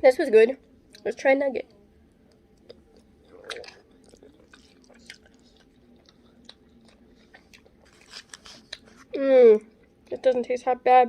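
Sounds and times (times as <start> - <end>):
person chewing food: 2.3 - 10.1.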